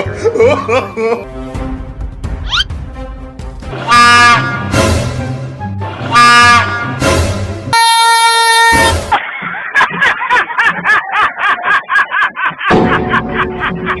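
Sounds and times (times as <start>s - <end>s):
train horn blast: 3.8s - 4.9s, 6.1s - 7.0s, 7.7s - 9.0s.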